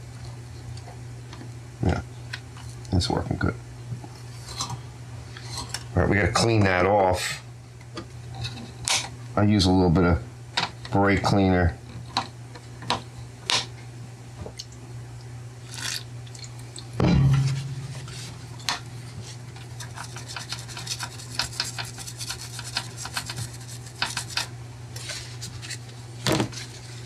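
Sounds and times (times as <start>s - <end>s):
steady low hum: 0.0s - 27.0s
loud knock: 17.0s - 18.1s
scrubbing on a circuit board: 19.6s - 24.5s.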